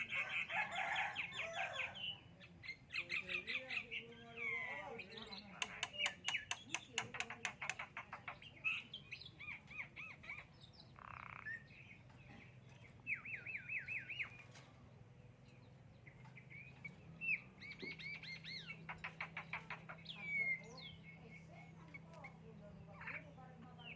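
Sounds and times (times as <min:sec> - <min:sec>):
bird chirping: 0:00.0 - 0:23.9.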